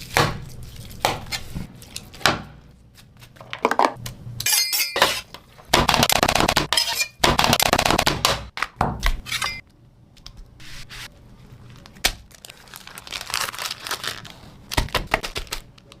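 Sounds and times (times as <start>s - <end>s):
crinkling and tearing: 11.6s - 16.0s.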